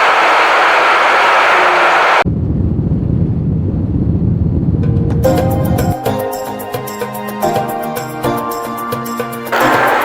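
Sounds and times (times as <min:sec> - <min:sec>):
loud rushing travel noise: 0:00.0 - 0:06.0, 0:09.5 - 0:10.0.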